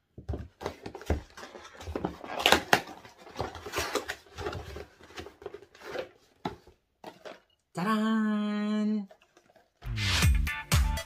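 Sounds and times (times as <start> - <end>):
packaging clicks and rustles: 0.2 - 7.5.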